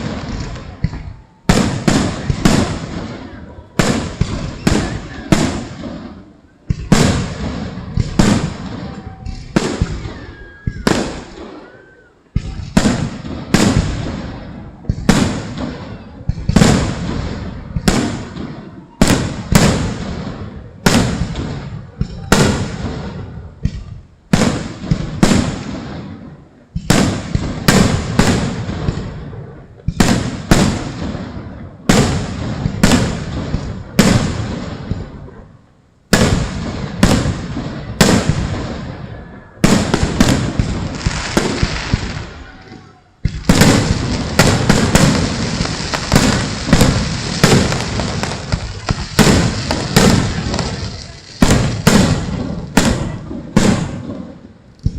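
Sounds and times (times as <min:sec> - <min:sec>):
fireworks shells bursting: 0:39.7 - 0:54.9.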